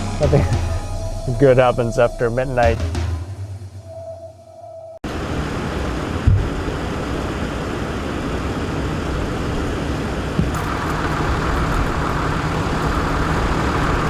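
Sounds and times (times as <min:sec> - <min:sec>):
higher hum: 0:00.0 - 0:14.0
traffic and engine noise: 0:05.0 - 0:14.0.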